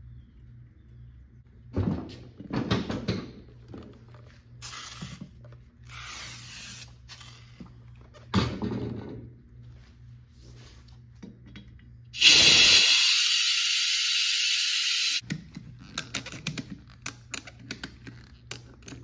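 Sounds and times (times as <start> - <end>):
low steady hum: 0.0 - 6.0.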